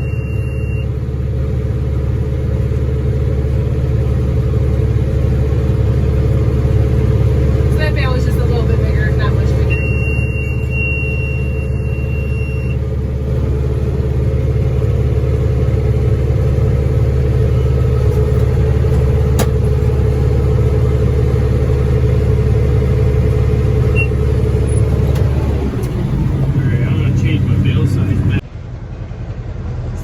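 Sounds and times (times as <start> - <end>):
high electronic beep: 0.0 - 0.9, 9.5 - 12.8
tractor engine running: 0.0 - 30.0.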